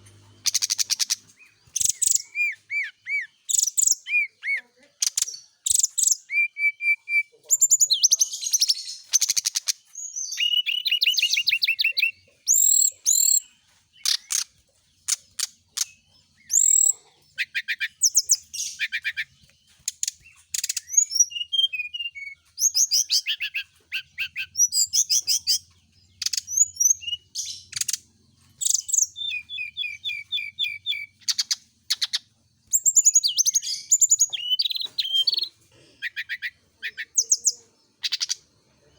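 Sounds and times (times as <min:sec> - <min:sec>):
bird singing chirps and trills: 0:00.0 - 0:38.9.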